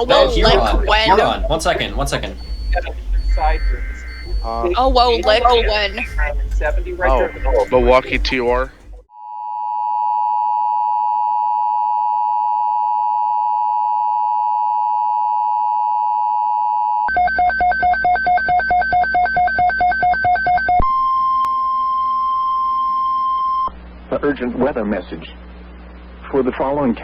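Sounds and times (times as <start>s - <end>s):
dual-tone attention signal: 0.0s - 9.0s
rapid pulsing beeps: 0.0s - 9.0s
steady alert tone: 0.0s - 9.0s.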